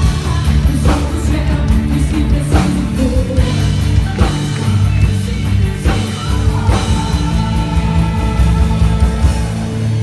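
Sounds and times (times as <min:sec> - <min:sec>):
band playing guitar and bass chords: 0:00.0 - 0:10.0.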